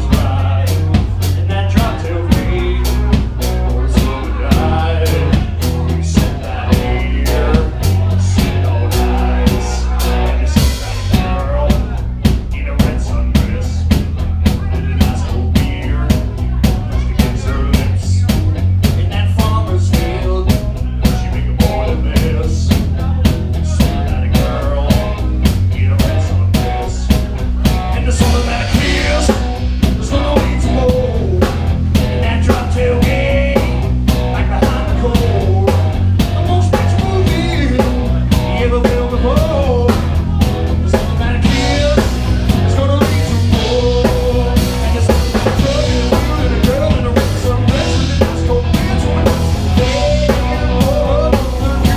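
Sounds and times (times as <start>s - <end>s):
drum kit beat: 0.0s - 51.9s
live rock band playing: 0.0s - 51.9s.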